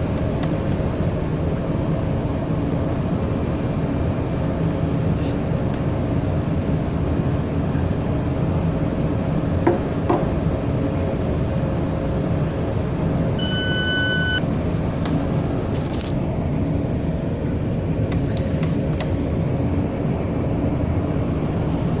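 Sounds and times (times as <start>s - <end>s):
ship engine rumbling: 0.0s - 18.1s
faint hum: 0.0s - 22.0s
electronic beep: 13.4s - 14.4s.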